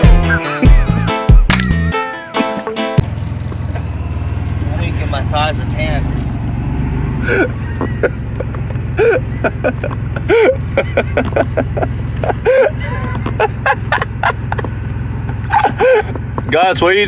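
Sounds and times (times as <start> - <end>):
car engine hum: 3.0 - 17.0
road noise: 3.0 - 17.0
person laughing in wheezing bursts: 7.2 - 14.6, 15.4 - 16.1.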